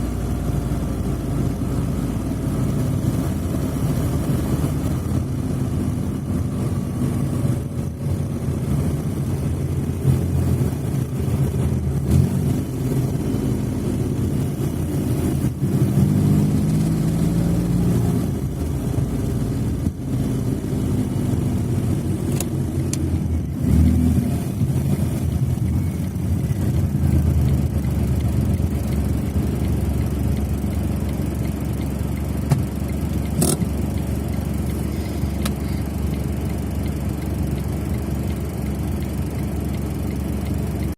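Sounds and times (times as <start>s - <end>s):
car engine revving under load: 0.0s - 40.2s.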